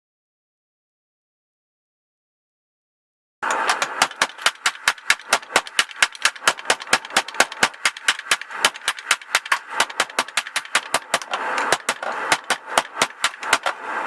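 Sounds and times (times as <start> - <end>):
hammer striking steel on anvil: 3.4 - 14.0
steady hiss: 3.4 - 14.0.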